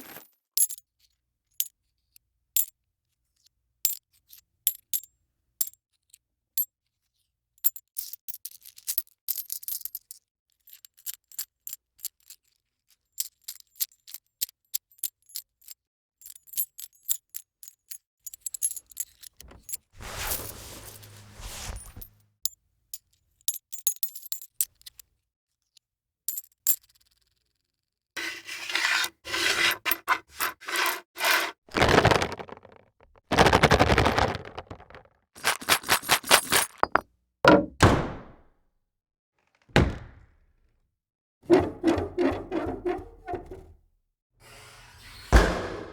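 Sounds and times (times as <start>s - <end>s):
scraping sounds: 19.4s - 22.2s, 28.2s - 37.0s, 41.5s - 43.7s.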